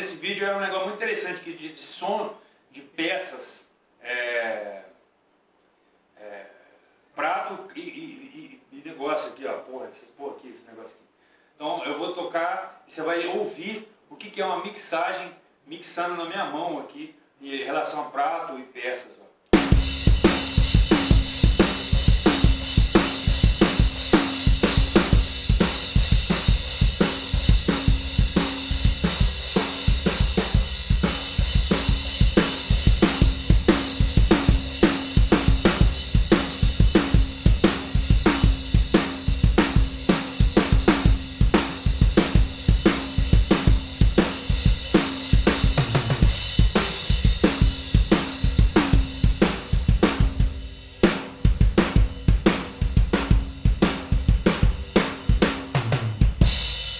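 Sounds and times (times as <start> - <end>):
bass drum hits: 19.6 - 50.7
hi-hat and cymbals: 19.6 - 56.9.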